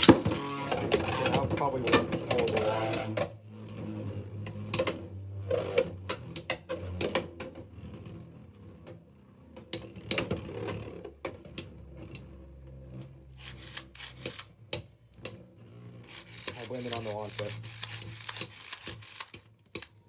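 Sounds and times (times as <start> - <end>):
spinning tops whirring: 13.4 - 14.5, 16.0 - 19.9
tops clicking and clacking: 16.1 - 20.0.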